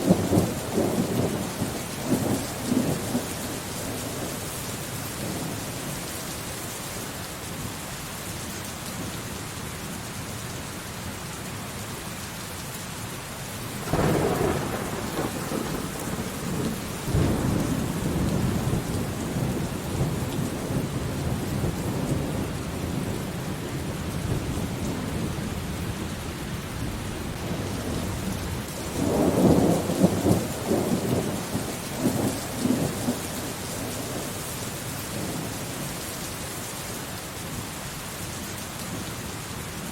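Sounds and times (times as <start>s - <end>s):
thunder rumbling: 0.0s - 4.3s, 13.8s - 34.4s
steady rain falling: 0.0s - 39.9s.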